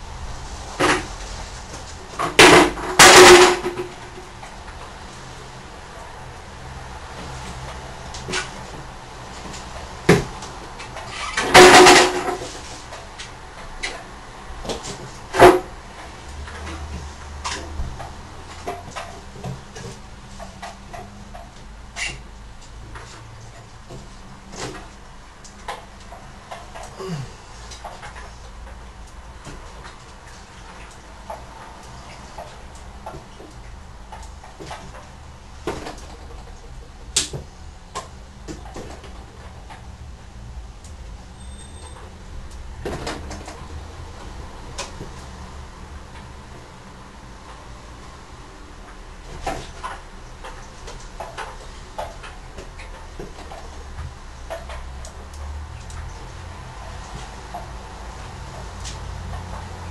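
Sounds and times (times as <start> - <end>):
motorcycle knocks and clunks: 2.2 - 4.2, 9.5 - 12.5.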